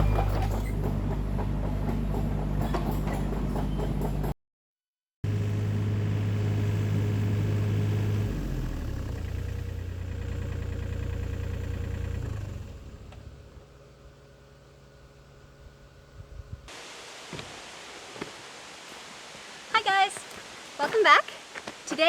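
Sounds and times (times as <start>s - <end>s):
excavator engine running: 0.0s - 4.4s, 5.3s - 16.7s.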